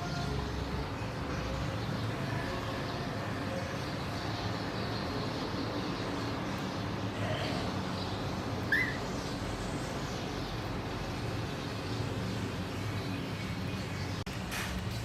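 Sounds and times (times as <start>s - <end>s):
cockatiel chirping: 8.7s - 9.1s.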